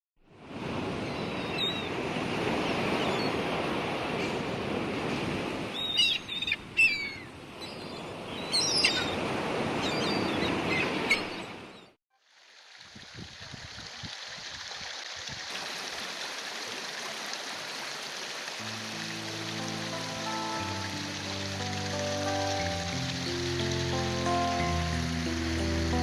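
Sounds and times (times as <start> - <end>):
small bird chirping: 5.8 - 9.2
waterfall rushing: 15.5 - 26.0.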